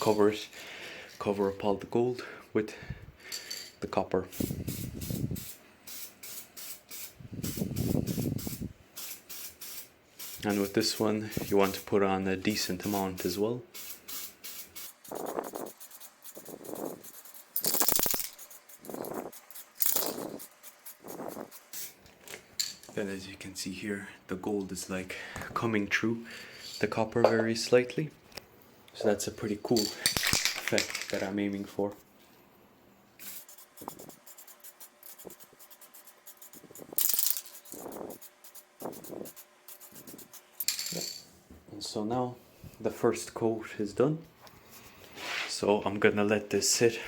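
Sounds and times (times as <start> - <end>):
aerosol spray can hissing: 4.3 - 11.9, 12.6 - 22.0, 33.2 - 40.6
clicks and rattles of handling: 29.7 - 31.7.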